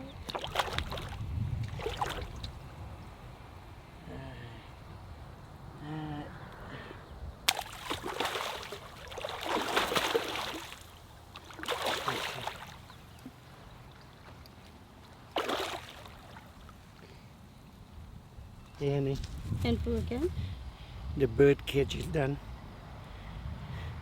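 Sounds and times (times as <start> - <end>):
fish splashing at water surface: 0.3 - 2.6, 7.5 - 13.1, 15.3 - 16.7.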